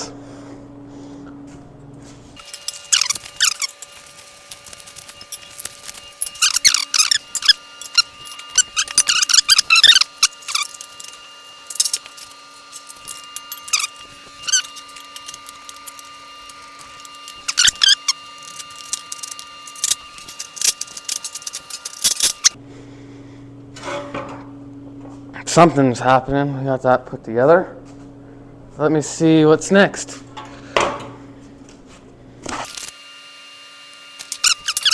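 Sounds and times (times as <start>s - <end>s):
steady low hum: 0.0s - 32.7s
metal parts clinking and clattering: 2.4s - 22.6s, 34.2s - 34.9s.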